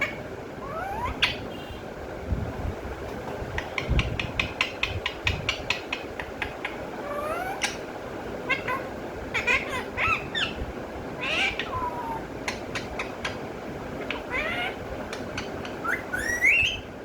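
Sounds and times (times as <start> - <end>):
parrot rising squeal: 0.0 - 1.4, 15.8 - 16.9
parrot chirping and squawking: 0.0 - 1.8, 3.5 - 17.0.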